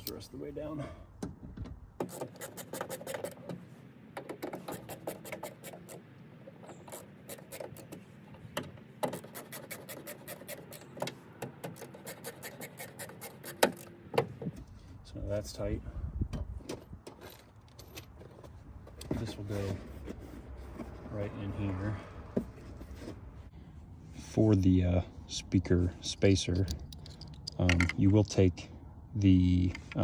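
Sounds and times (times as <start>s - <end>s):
screwdriver clicks and scrapes: 4.2s - 6.0s.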